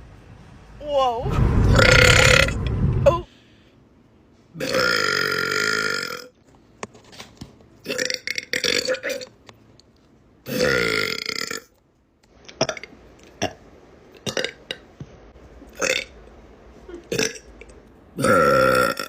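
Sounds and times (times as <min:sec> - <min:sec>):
woman burping loudly: 0:04.6 - 0:06.3, 0:07.9 - 0:09.3, 0:16.9 - 0:17.5, 0:18.2 - 0:19.0.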